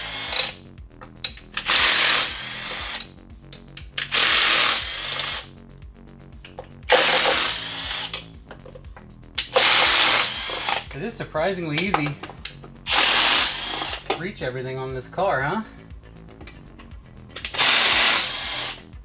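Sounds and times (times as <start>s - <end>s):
cordless power tool spinning: 0.0s - 0.6s, 1.6s - 3.1s, 4.0s - 5.5s, 6.9s - 8.2s, 9.4s - 10.9s, 12.9s - 14.2s, 17.4s - 18.9s.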